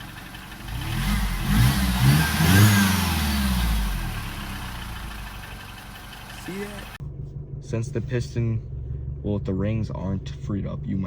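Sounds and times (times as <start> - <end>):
car engine revving: 0.0 - 7.0.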